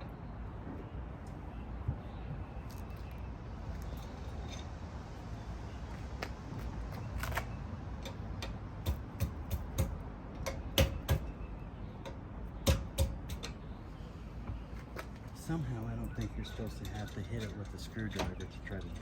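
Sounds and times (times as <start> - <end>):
screwdriver knocking on metal: 8.0 - 11.3, 12.1 - 13.5.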